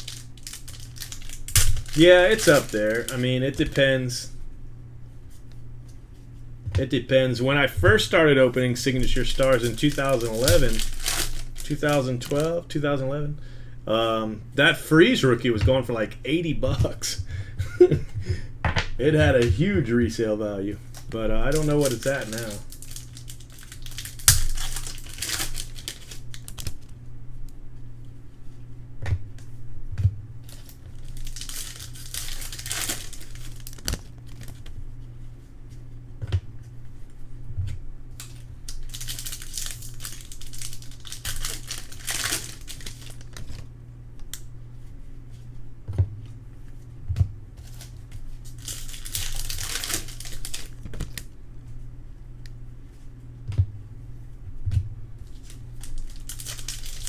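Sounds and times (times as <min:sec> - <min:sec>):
wrappers tearing and crinkling: 0:00.0 - 0:03.9, 0:08.7 - 0:12.6, 0:20.8 - 0:26.9, 0:30.4 - 0:34.7, 0:38.2 - 0:43.7, 0:47.6 - 0:51.3, 0:55.2 - 0:57.0.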